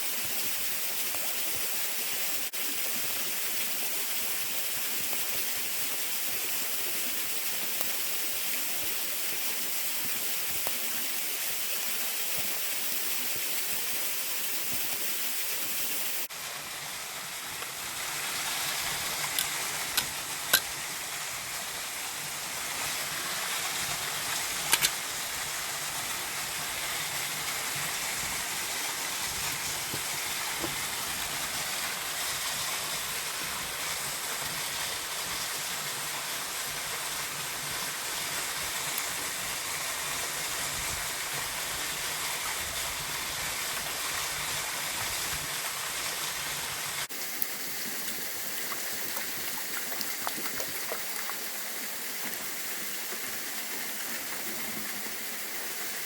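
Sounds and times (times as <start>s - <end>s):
waterfall rushing: 47.1s - 56.0s.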